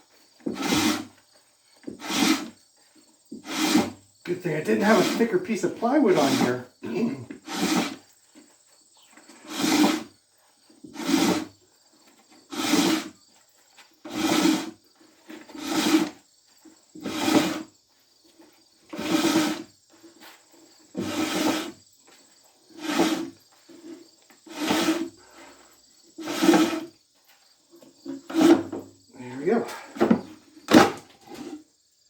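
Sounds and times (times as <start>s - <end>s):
creaking hydraulic pump strokes: 0.5s - 1.1s, 1.9s - 2.5s, 3.4s - 8.0s, 9.3s - 10.1s, 10.9s - 11.5s, 12.5s - 13.2s, 14.1s - 14.8s, 15.4s - 16.2s, 17.0s - 17.7s, 18.9s - 19.7s, 21.0s - 21.8s, 22.7s - 25.4s, 26.2s - 26.9s, 28.1s - 28.8s.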